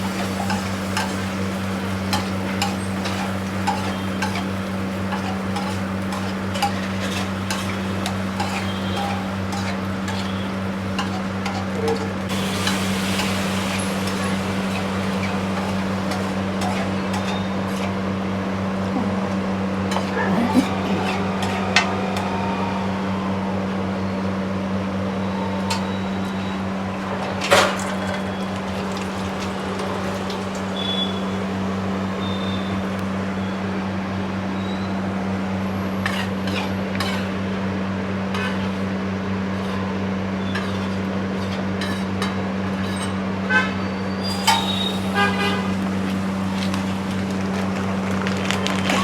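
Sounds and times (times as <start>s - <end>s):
metal utensils clanking on griddle: 0.0s - 18.0s, 27.2s - 31.1s, 36.0s - 37.4s, 38.3s - 38.8s, 39.6s - 43.4s, 44.1s - 47.9s.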